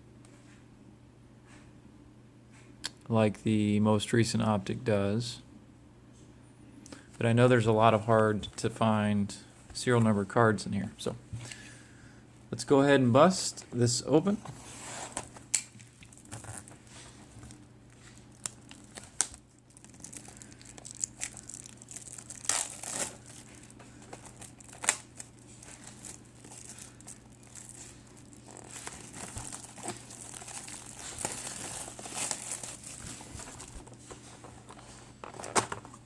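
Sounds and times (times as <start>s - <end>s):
plastic shrink-wrap crinkling: 15.2s - 35.8s.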